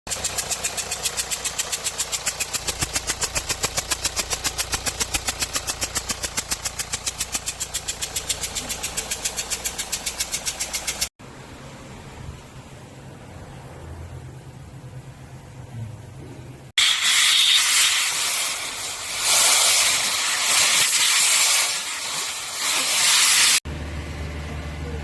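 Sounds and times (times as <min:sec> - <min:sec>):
diesel engine ticking: 0:00.1 - 0:11.1.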